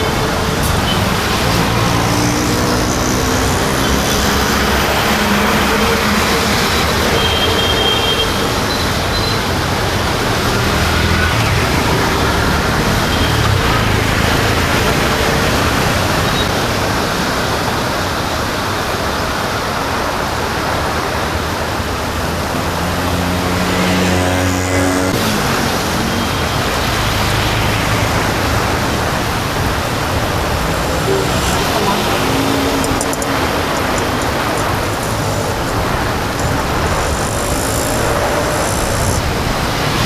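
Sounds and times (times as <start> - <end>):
rain and traffic on wet road: 0.0 - 40.0
vehicle passing close: 22.9 - 40.0.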